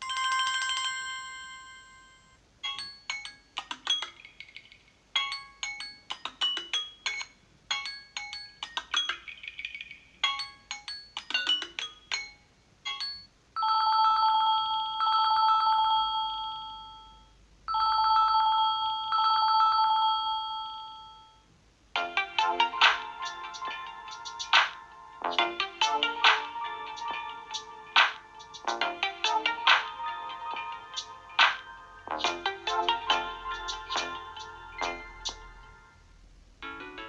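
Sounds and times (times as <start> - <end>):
busy ringtone tune: 0.0 - 21.4, 22.0 - 36.0
ringtone of plucked notes: 0.0 - 21.4, 22.0 - 36.0
trilling phone ring: 13.2 - 21.4.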